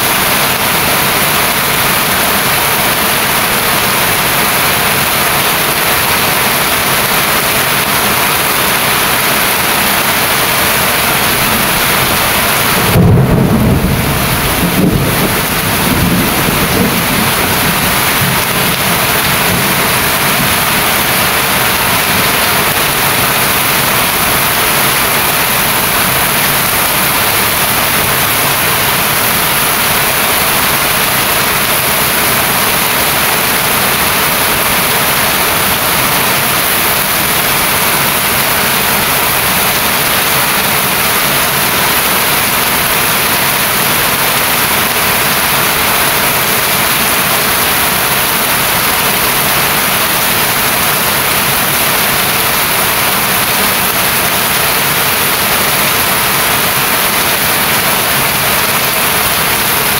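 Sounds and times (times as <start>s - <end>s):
heavy rain: 0.0s - 59.9s
thunder rumbling: 7.7s - 38.3s.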